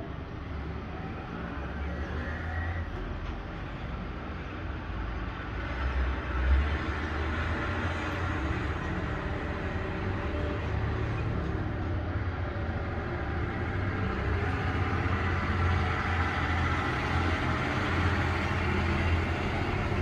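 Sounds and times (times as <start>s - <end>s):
truck engine rumbling: 6.7s - 20.0s.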